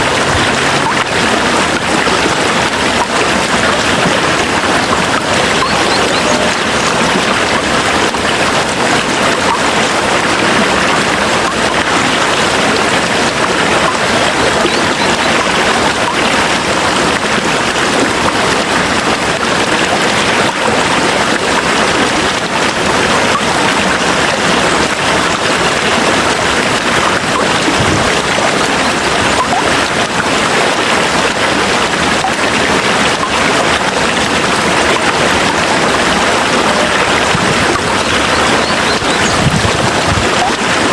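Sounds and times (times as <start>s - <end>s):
heavy rain falling: 0.0s - 40.9s.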